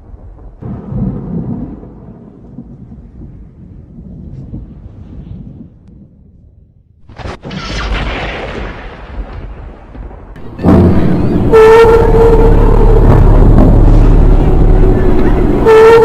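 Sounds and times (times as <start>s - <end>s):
thunderclap with rumble: 0.0s - 16.0s
deep low rumble: 9.0s - 16.0s
droning horn-like tone: 10.6s - 16.0s.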